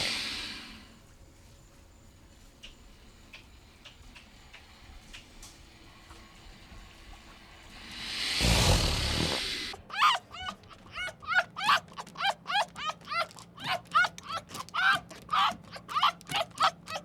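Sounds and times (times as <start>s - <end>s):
small dog yapping: 9.9s - 17.0s.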